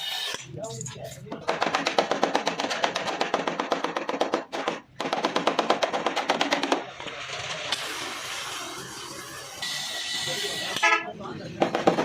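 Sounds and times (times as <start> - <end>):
hammering on sheet metal: 1.4 - 6.8.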